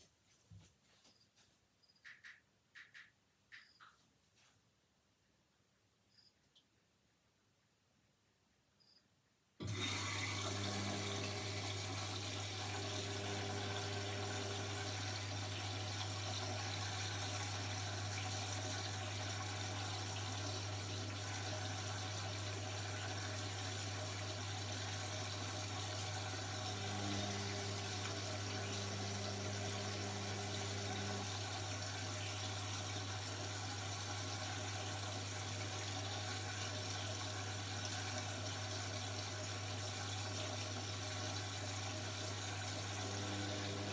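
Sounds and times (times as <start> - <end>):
washing machine water rushing: 9.6 - 43.9.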